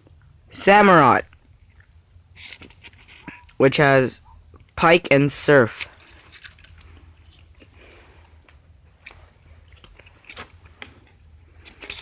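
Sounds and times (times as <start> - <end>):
gum chewing clicks and smacks: 1.6 - 2.0, 8.4 - 11.2.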